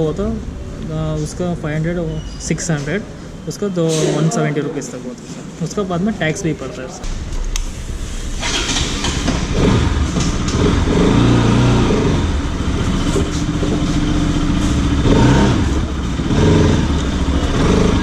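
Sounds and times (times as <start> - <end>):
motorcycle engine revving: 7.8 - 18.0.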